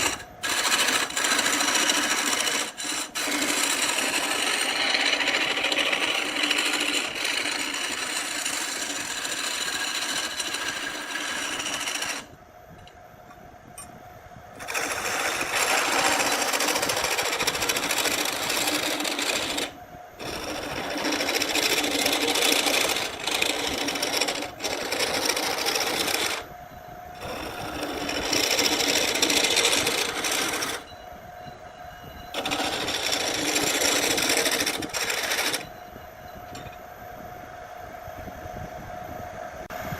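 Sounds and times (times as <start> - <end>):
power tool working wood: 0.0 - 12.3, 14.6 - 26.5, 27.2 - 30.9, 32.4 - 35.7.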